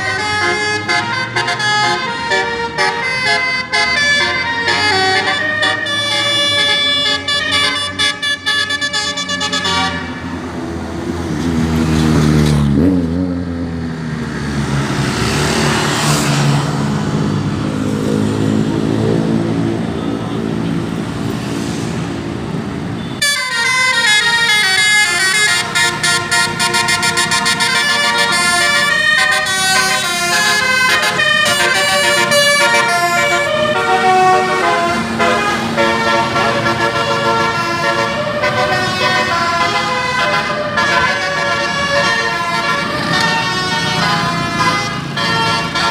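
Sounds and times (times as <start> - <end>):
bus musical air horn melody: 0.0 - 10.4, 23.0 - 45.9.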